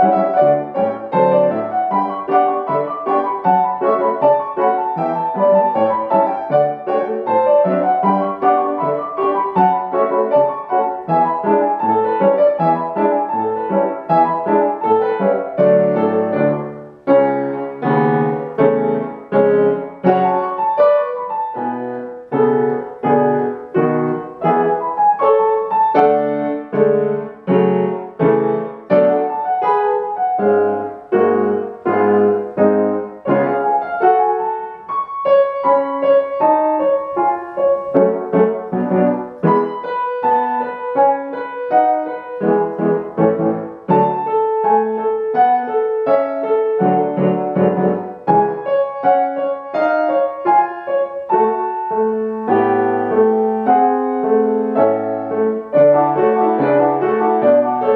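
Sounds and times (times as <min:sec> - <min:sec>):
piano playing a polka: 0:00.0 - 0:57.9.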